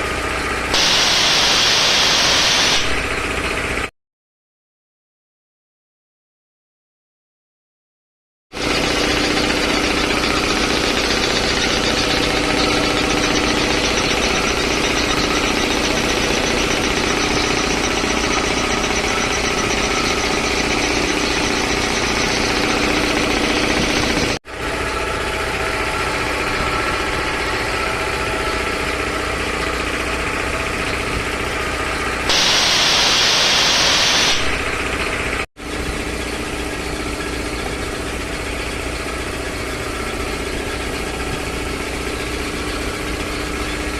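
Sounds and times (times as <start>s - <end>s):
air compressor running: 0.0s - 3.9s, 8.5s - 43.9s
loud hiss of escaping air: 0.8s - 3.0s, 32.3s - 34.6s.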